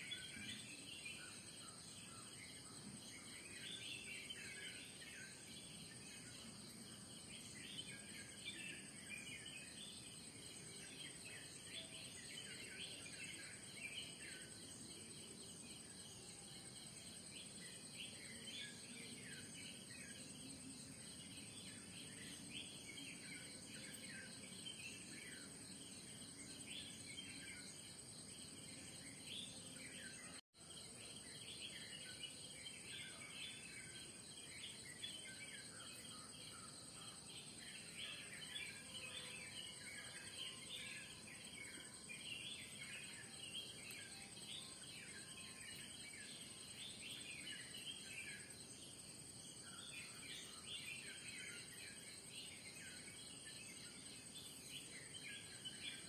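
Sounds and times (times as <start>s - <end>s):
small birds chirping: 0.0s - 56.0s.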